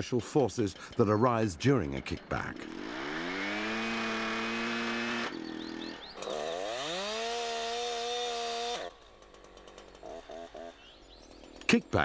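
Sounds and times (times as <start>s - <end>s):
chainsaw engine revving: 2.5s - 12.0s.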